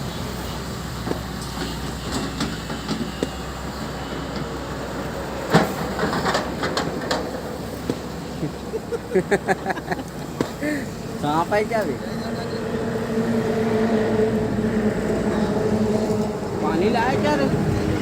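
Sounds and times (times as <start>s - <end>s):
diesel engine humming: 0.0s - 18.0s
voices: 7.8s - 18.0s.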